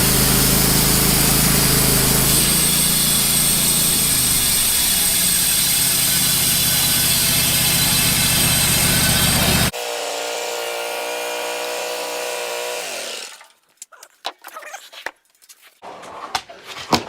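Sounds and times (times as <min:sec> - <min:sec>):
band sawmill engine running: 0:00.0 - 0:13.4
band blade cutting log: 0:00.0 - 0:13.5.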